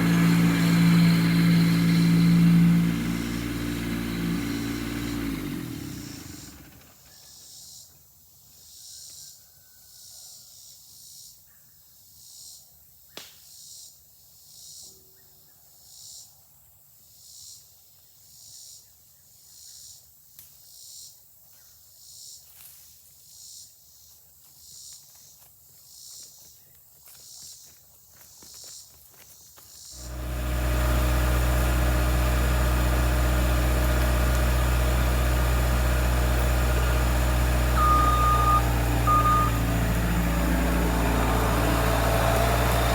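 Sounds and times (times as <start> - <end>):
engine running: 0.0 - 7.1, 30.0 - 42.9.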